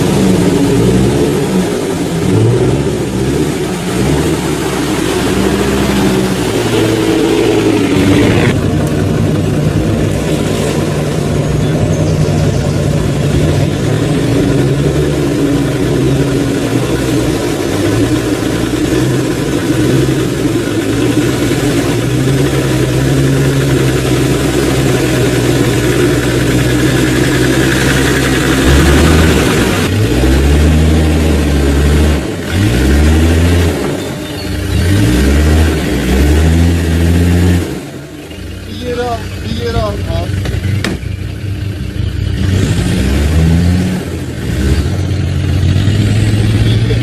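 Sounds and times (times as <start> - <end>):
off-road vehicle engine running: 0.0 - 47.0.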